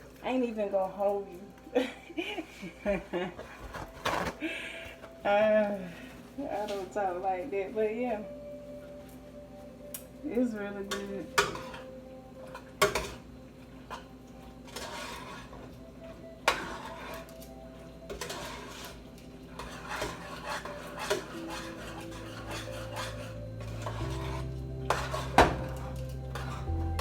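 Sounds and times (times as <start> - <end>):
spoon scraping in a pot: 10.9 - 11.9, 13.9 - 15.8, 16.4 - 17.5, 18.1 - 27.0.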